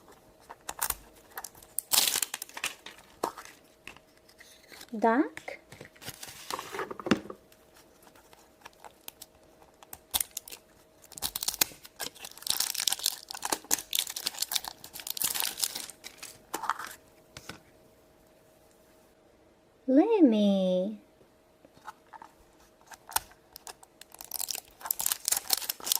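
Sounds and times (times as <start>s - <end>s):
plastic wrapper crinkling: 0.4s - 3.8s, 8.0s - 17.0s, 22.1s - 25.9s.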